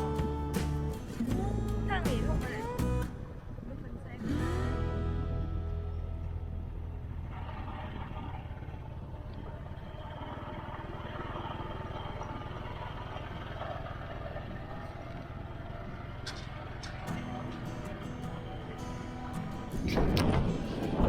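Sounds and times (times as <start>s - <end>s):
motorcycle engine running: 0.0s - 3.5s, 4.2s - 21.0s
wind noise: 19.3s - 21.0s.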